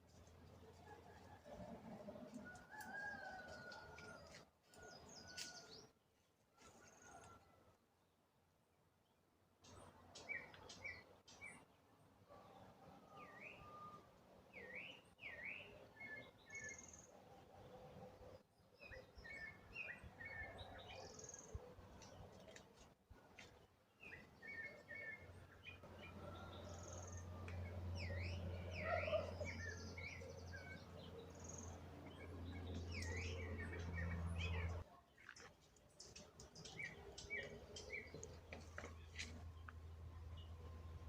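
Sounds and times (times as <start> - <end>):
birds chirping and trilling: 24.0 - 39.7.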